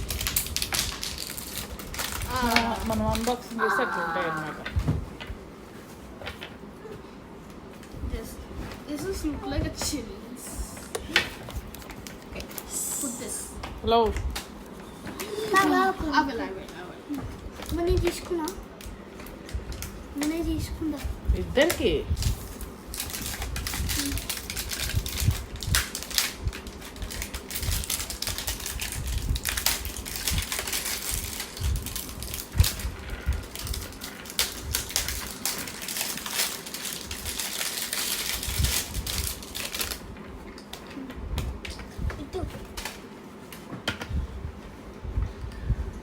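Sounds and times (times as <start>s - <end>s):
plastic toys and packaging handled: 0.0s - 4.8s, 21.8s - 40.2s.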